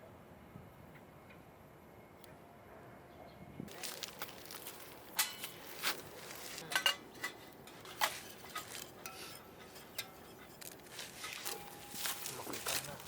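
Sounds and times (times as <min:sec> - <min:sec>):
metal cookware clinking: 0:05.1 - 0:05.6, 0:06.6 - 0:12.3.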